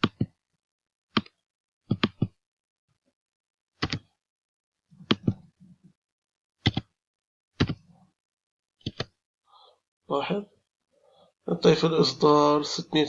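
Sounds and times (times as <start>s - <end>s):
computer mouse clicking: 0.0s - 0.4s, 1.2s - 2.4s, 3.8s - 4.2s, 5.0s - 5.4s, 6.6s - 6.9s, 7.6s - 7.8s, 8.8s - 9.2s.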